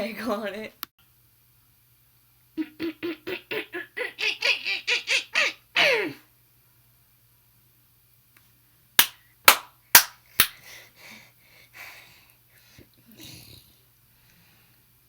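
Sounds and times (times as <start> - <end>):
sharp smacks: 9.0 - 10.6.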